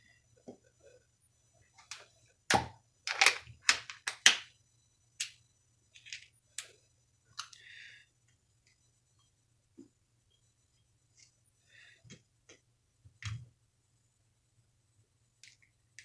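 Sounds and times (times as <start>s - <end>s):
clicks of small parts and tools: 1.8s - 4.4s.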